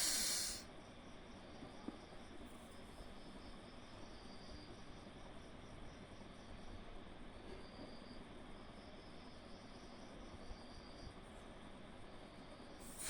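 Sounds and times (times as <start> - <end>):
forceful breath out: 0.0 - 0.6
high-pitched insect chirping: 0.0 - 0.6
low hiss: 0.0 - 0.6.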